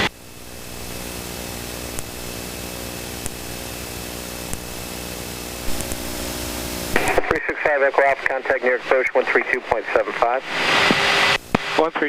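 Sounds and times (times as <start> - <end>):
jet engines humming: 2.8 - 12.0.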